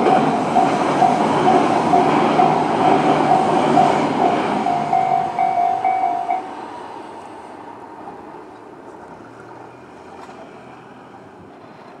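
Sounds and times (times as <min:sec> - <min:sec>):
train running noise: 0:00.0 - 0:12.0
level crossing bell dinging: 0:04.6 - 0:06.5.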